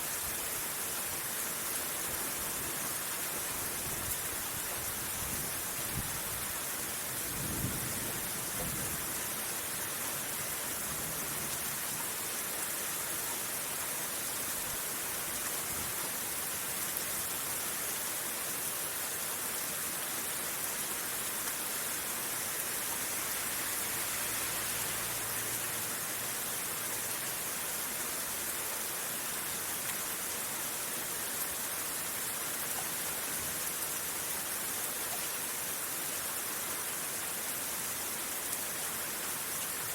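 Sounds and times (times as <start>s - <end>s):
steady rain hissing: 0.0s - 39.9s
low rumble of thunder: 7.3s - 9.2s.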